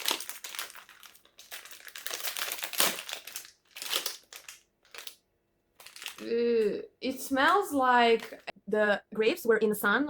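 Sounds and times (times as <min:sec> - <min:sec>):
plastic packaging crinkling: 0:00.0 - 0:06.3.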